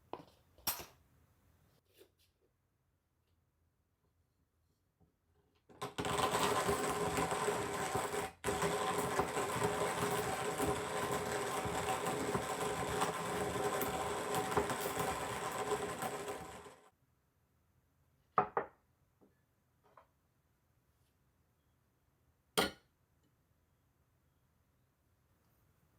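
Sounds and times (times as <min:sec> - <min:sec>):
electric coffee grinder whirring: 0:05.8 - 0:16.9.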